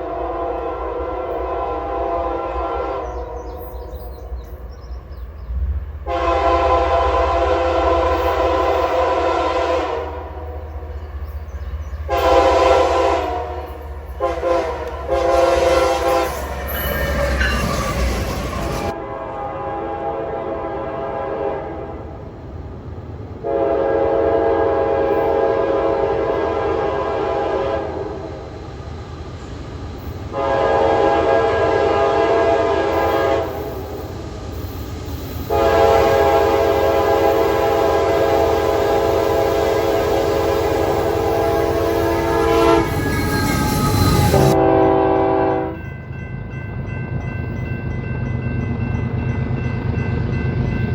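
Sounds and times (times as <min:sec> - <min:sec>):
locomotive air horn blasts: 0:00.0 - 0:03.7, 0:06.0 - 0:10.9, 0:12.1 - 0:22.2, 0:23.4 - 0:28.4, 0:30.3 - 0:34.0, 0:35.5 - 0:45.8
train rumbling: 0:00.0 - 0:50.9.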